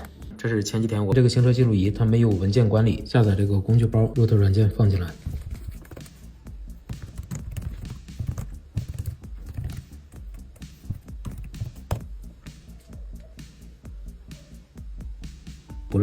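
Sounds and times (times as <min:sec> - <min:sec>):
background music: 0:00.0 - 0:16.0
sharp clicks and taps: 0:06.9 - 0:12.1.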